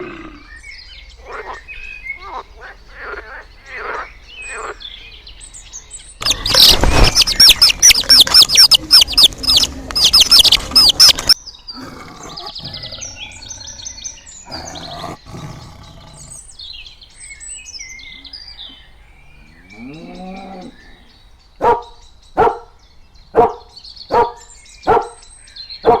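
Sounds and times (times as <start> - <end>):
rapid bird chirping: 0.0 - 26.0
pitch-bending animal call: 6.2 - 15.2
dog barking: 21.6 - 25.2.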